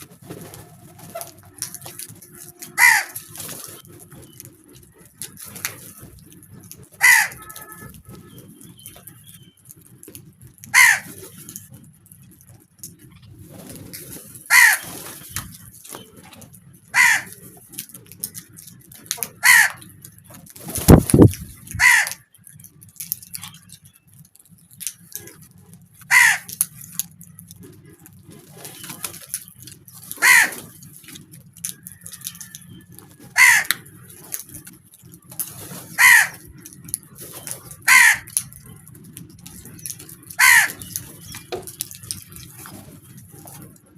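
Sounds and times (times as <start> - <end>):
crows cawing: 1.6 - 3.3, 7.0 - 7.8, 10.7 - 11.2, 14.5 - 14.9, 16.8 - 17.4, 19.2 - 19.9, 21.8 - 22.2, 26.0 - 26.6, 30.1 - 30.8, 33.2 - 33.9, 35.8 - 36.5, 37.7 - 38.4, 39.7 - 41.0.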